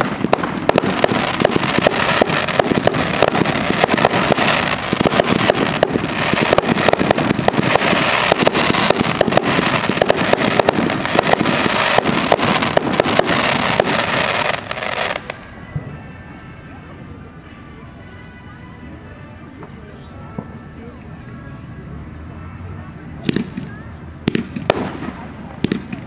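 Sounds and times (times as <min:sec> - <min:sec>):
fireworks bangs: 0:00.0 - 0:16.0, 0:23.2 - 0:26.0
fireworks crackle: 0:00.0 - 0:16.1, 0:23.2 - 0:26.0.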